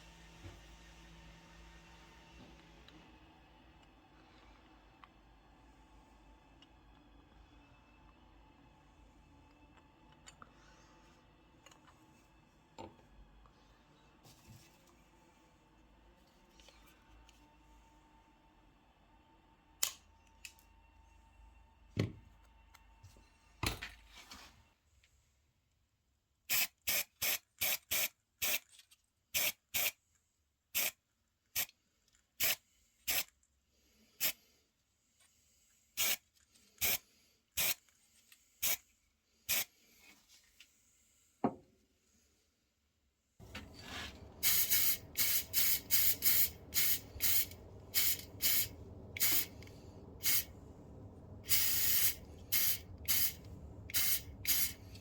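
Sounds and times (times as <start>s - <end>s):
aerosol spray can bursts: 29.4s - 29.9s, 44.4s - 49.6s, 50.2s - 50.5s, 51.4s - 54.9s.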